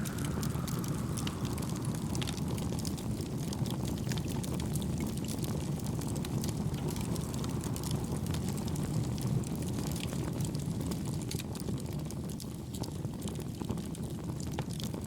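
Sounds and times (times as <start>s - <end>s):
low rushing noise: 0.0s - 4.4s, 5.9s - 10.4s
wood fire crackling: 0.0s - 15.0s.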